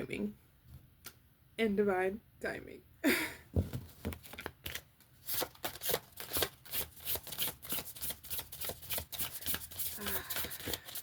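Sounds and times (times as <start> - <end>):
cards being shuffled: 3.7 - 11.0.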